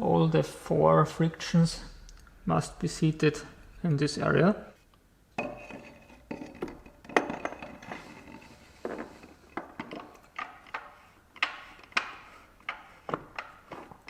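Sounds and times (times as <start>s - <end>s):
metallic clinks and knocks: 5.4s - 14.0s.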